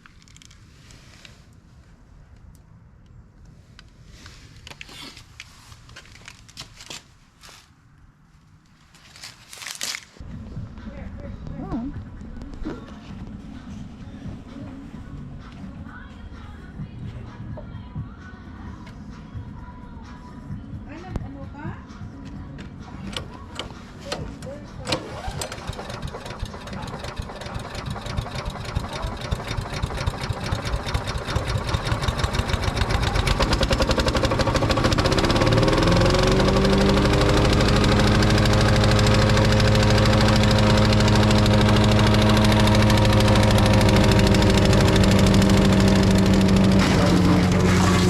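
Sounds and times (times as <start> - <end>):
wood chipper engine pulsing: 24.9 - 48.0.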